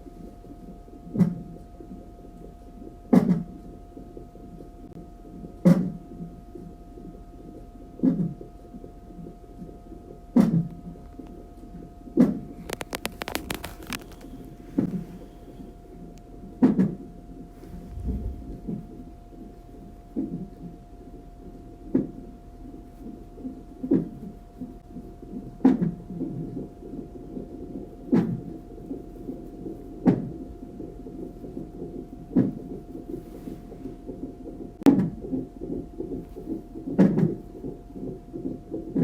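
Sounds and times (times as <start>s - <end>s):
faint constant hum: 0.0s - 39.0s
sharp thumps: 17.6s - 19.1s
low whooshing from doppler monitor: 17.6s - 19.2s.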